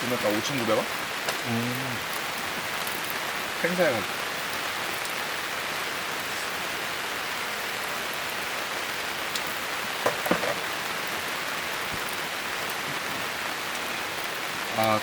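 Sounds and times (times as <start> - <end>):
rain pattering: 0.0 - 15.0
small knocks: 10.0 - 10.7.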